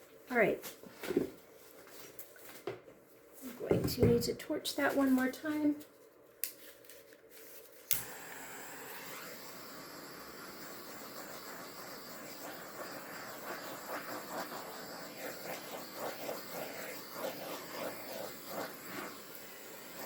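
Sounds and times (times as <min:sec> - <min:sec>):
handheld torch hissing: 0:07.9 - 0:20.0.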